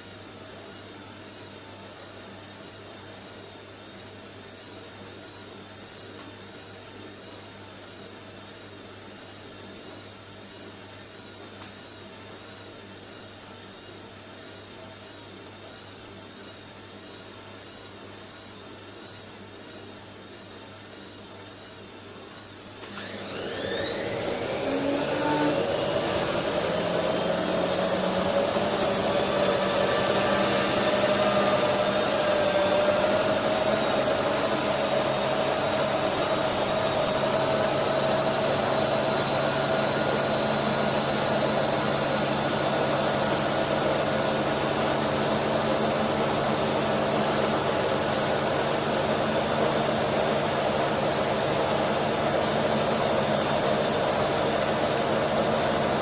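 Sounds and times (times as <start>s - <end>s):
washing machine running hum: 0.0s - 56.0s
washing machine motor whining: 22.8s - 56.0s.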